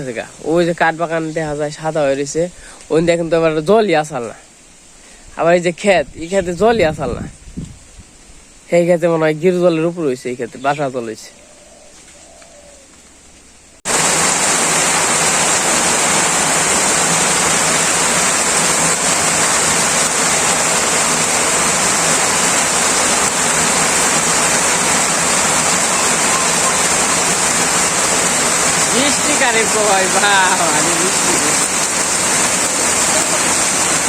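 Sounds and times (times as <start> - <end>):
heavy rain pouring: 13.2 - 34.0.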